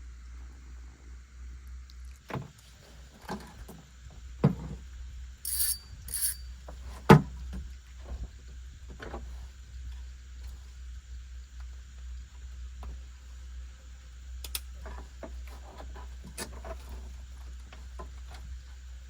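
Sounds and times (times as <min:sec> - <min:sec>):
short hissing bursts: 0:05.4 - 0:06.4.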